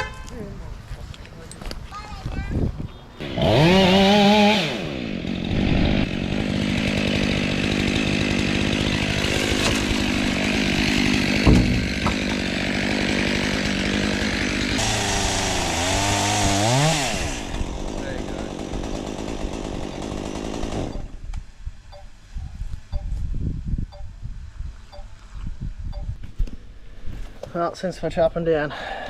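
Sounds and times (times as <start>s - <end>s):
chainsaw cutting wood: 3.2s - 21.3s
sharp thump: 11.4s - 12.4s.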